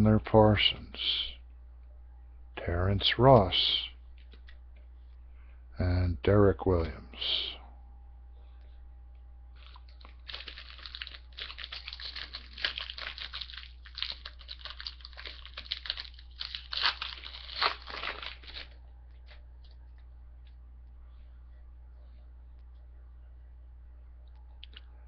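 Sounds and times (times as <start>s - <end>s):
card pack wrapper tearing and crinkling: 9.6s - 19.4s.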